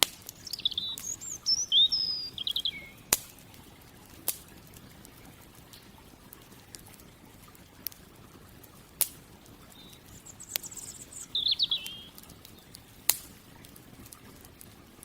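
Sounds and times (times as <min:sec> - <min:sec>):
bird trilling and chirping: 0:00.0 - 0:03.2, 0:09.7 - 0:12.7
campfire crackling: 0:00.0 - 0:15.0
fire popping sharply: 0:00.0 - 0:15.0.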